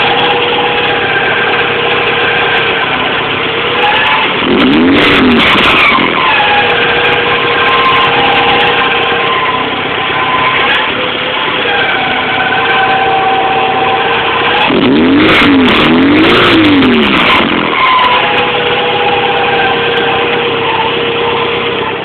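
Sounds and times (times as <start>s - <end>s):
car engine revving: 0.0s - 22.0s
high-pitched screech: 0.0s - 22.0s.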